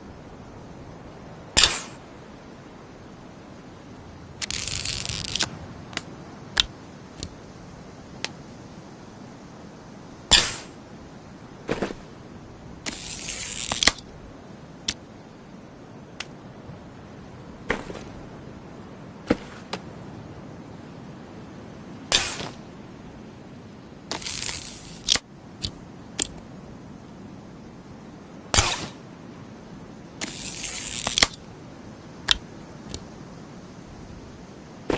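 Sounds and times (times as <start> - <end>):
rasping noises: 4.4 - 5.5
crossbow clicks and snaps: 4.4 - 7.4, 12.9 - 14.0, 24.1 - 26.4, 30.2 - 31.4, 32.2 - 33.0.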